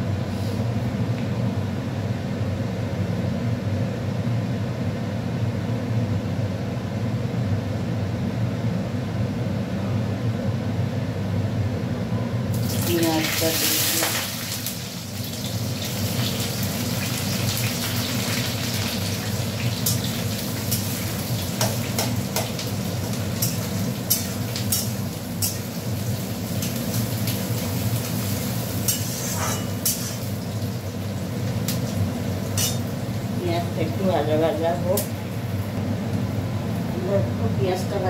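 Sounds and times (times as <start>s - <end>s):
onions sizzling in oil: 12.5s - 35.7s.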